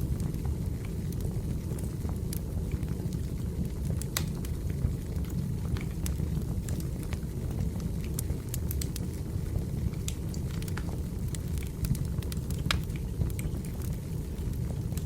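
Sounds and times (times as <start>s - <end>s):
flames rushing: 0.0s - 15.0s
logs crackling and popping: 0.0s - 15.0s.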